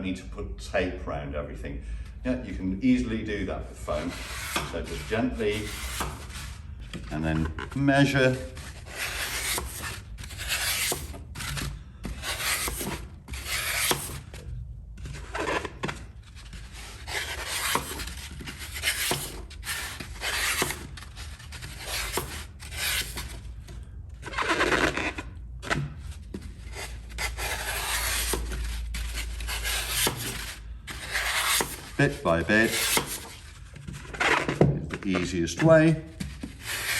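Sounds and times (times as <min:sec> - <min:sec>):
floral foam scraping against a pot: 0:03.8 - 0:14.2, 0:26.7 - 0:34.5.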